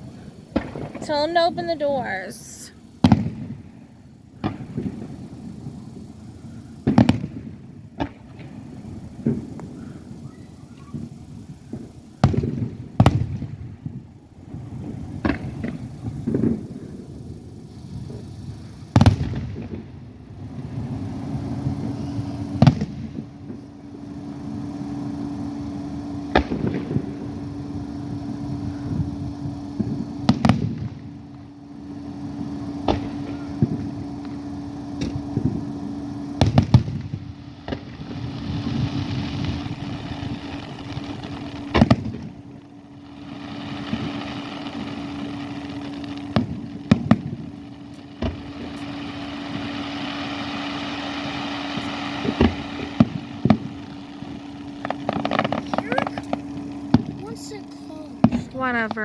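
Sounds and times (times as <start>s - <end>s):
rumbling and crackle: 0.0s - 59.0s
steady hum: 0.0s - 59.0s
fireworks shells bursting: 20.5s - 59.0s.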